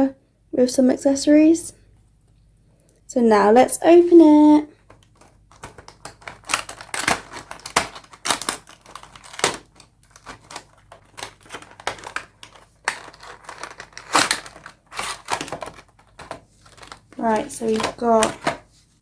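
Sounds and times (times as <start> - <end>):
plastic insert crinkling: 4.3 - 19.0.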